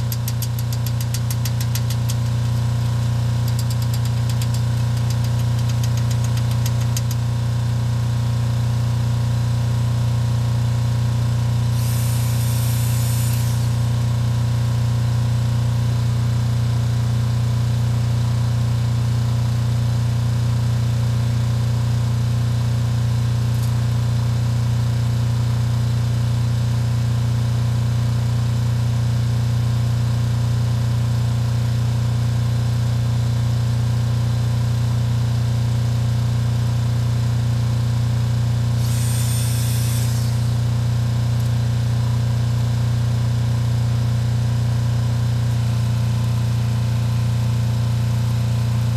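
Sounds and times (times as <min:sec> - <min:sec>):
engine idling: 0:00.0 - 0:08.8, 0:11.5 - 0:14.8, 0:38.7 - 0:41.5.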